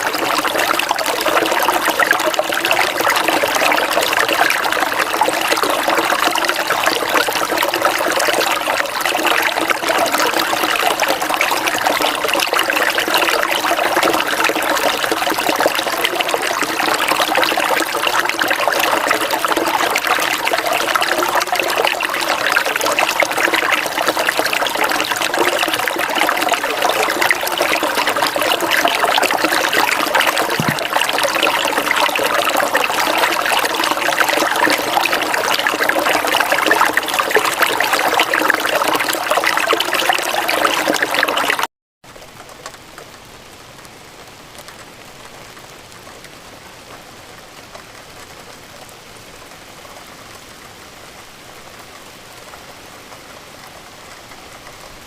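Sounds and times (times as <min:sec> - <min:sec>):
running water trickling and splashing: 0:00.0 - 0:43.2
soft patter of rain: 0:00.0 - 0:55.0.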